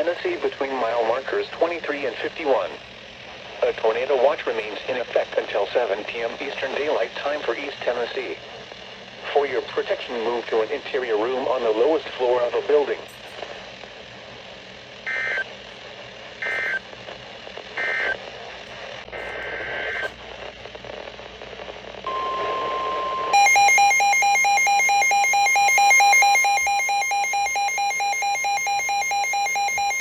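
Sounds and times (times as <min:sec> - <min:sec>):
shrill pulsing electronic alarm: 0:22.1 - 0:30.0
two-tone data chirps: 0:22.1 - 0:30.0.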